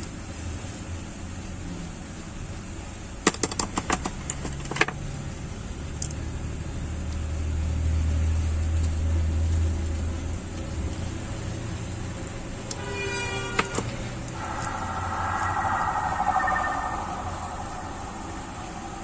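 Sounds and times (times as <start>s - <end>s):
low steady hum: 14.3s - 19.0s.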